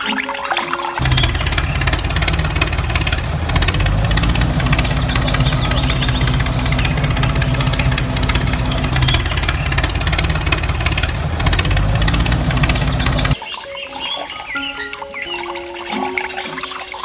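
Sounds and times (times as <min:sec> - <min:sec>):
engine idling with knock: 0:01.0 - 0:13.4.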